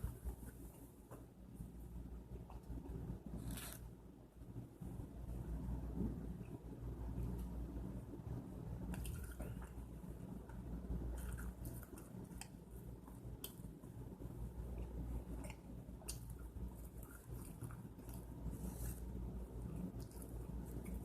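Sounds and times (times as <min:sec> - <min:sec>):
steady low hum: 0:00.0 - 0:21.0
person chewing food: 0:11.0 - 0:21.0.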